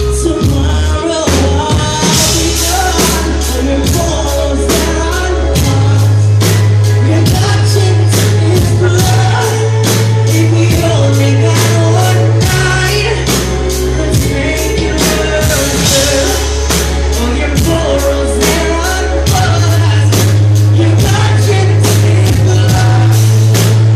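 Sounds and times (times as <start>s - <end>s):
heavy bass: 0.0s - 23.9s
male lead vocal singing: 0.0s - 23.9s
steady drum beat: 0.0s - 23.9s.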